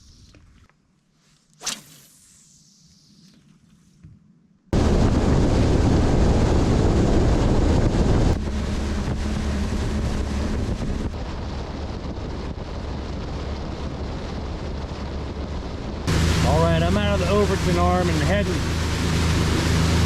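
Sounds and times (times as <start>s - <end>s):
wind noise on microphone: 4.0s - 20.0s
motorboat engine drone: 4.8s - 20.0s
rushing water: 16.1s - 20.0s.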